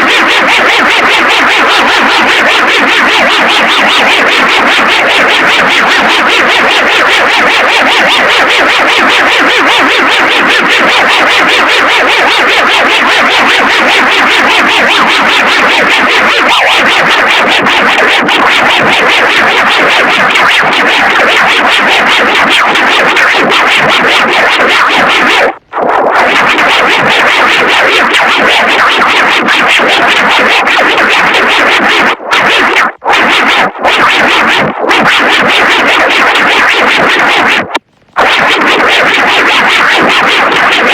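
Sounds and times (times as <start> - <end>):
emergency alert alarm: 0.0 - 29.1.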